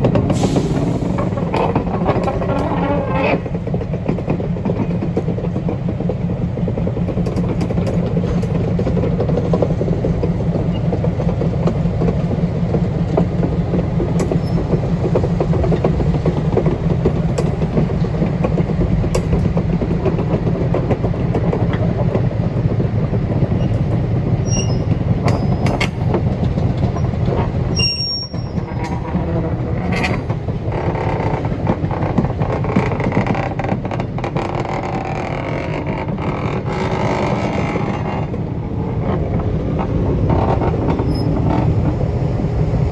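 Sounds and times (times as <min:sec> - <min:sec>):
low engine rumble: 0:00.0 - 0:42.9
wheels clicking over rail joints: 0:00.0 - 0:42.9
high wheel squeals: 0:14.3 - 0:14.7, 0:23.4 - 0:30.3, 0:40.9 - 0:41.9.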